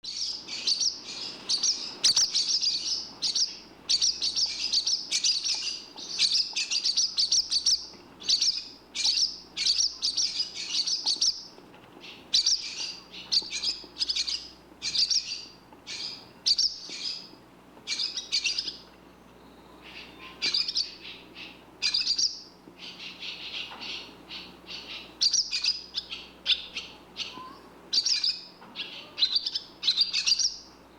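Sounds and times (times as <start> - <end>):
swallows twittering: 0.0 - 30.7.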